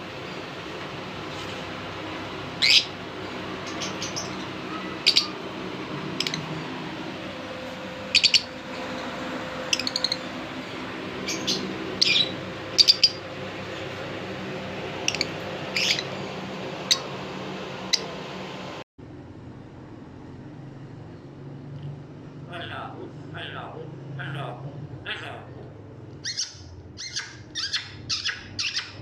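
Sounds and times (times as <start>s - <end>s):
steady low hum: 0.0s - 29.0s
finches chirping: 2.6s - 3.0s, 3.6s - 5.4s, 6.1s - 6.6s, 8.0s - 10.3s, 11.2s - 13.3s, 15.0s - 17.2s, 26.2s - 29.0s.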